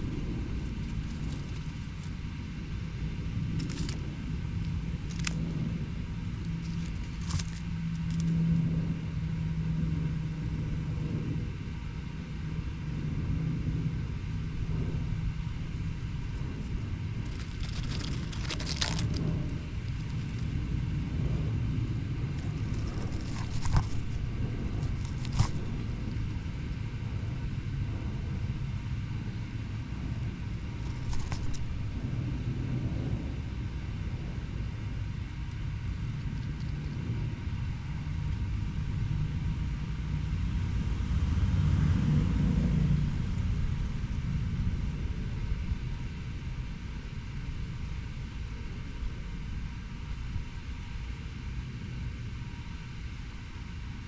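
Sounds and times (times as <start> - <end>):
low engine-like hum: 0.0 - 54.0
road traffic rumble: 0.0 - 54.0
short clicks and rustles: 17.2 - 19.3, 22.4 - 26.4, 30.8 - 31.8.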